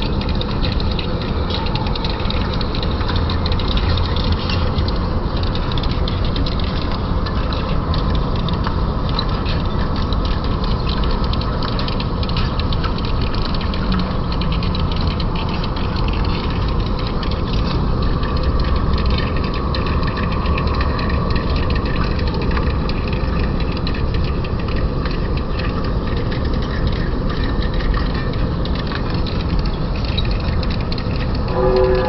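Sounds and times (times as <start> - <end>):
lathe rumbling: 0.0 - 32.0.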